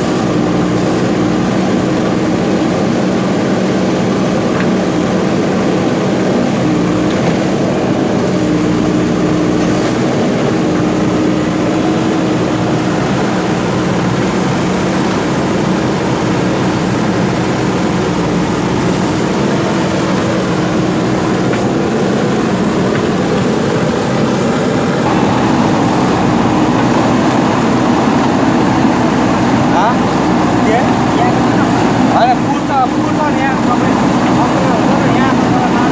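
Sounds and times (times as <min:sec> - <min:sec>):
diesel engine running under load: 0:00.0 - 0:35.9.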